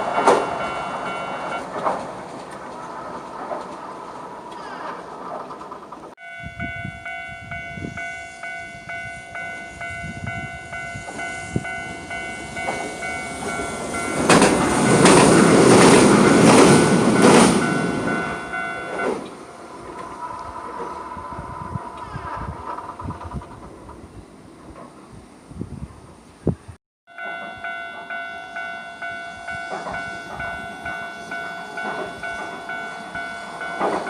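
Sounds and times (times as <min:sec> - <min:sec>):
level-crossing warning bell: 0:00.0 - 0:01.9, 0:06.2 - 0:20.7, 0:27.1 - 0:34.0
wheels clattering over rail joints: 0:00.0 - 0:06.2, 0:11.1 - 0:25.1, 0:29.5 - 0:34.0
tram passing: 0:00.0 - 0:26.3, 0:27.1 - 0:34.0.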